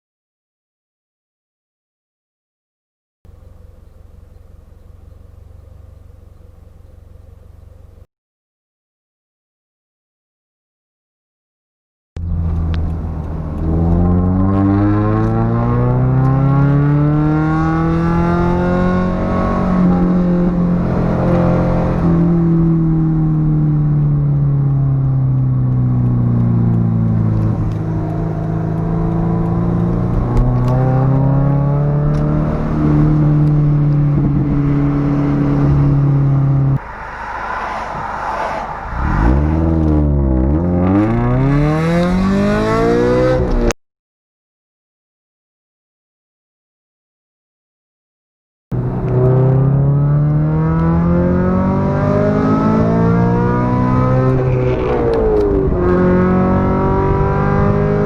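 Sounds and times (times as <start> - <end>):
car engine revving: 3.3 - 8.0, 12.2 - 43.8, 48.7 - 58.0.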